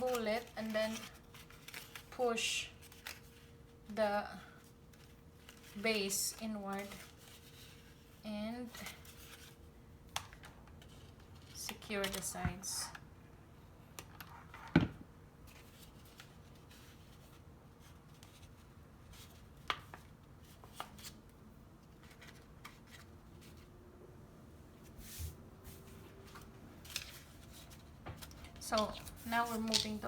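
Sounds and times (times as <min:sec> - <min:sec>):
paper rustling and tapping: 0:26.3 - 0:30.0.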